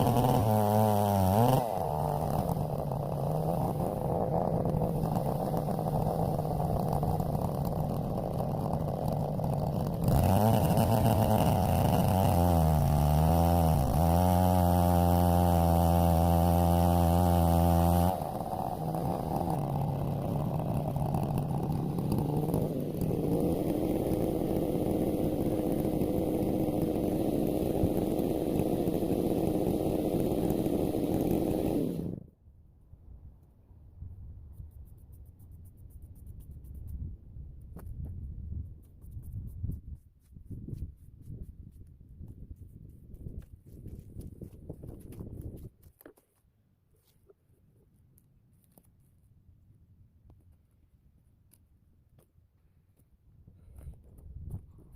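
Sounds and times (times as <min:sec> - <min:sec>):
chainsaw revving: 0:00.0 - 0:32.3.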